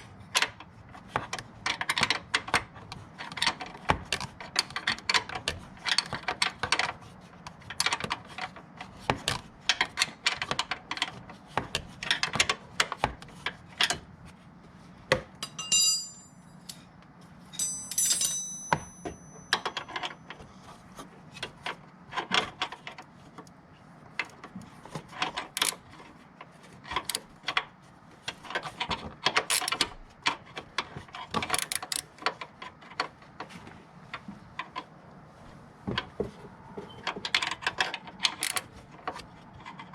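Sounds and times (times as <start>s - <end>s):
hand tools clanking on metal: 15.4s - 16.8s, 17.6s - 20.2s
short metallic rings: 15.4s - 16.8s, 17.5s - 19.9s.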